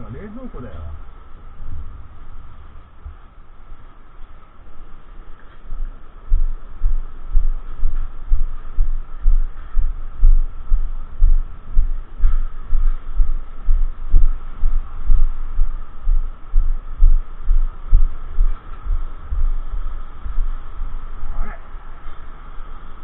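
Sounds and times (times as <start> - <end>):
faint steady hum: 0.0 - 23.0
low thumps on microphone: 5.7 - 21.0.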